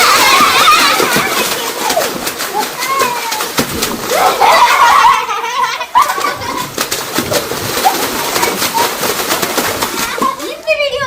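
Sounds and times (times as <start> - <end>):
children squealing and giggling: 0.0 - 7.0, 7.7 - 11.0.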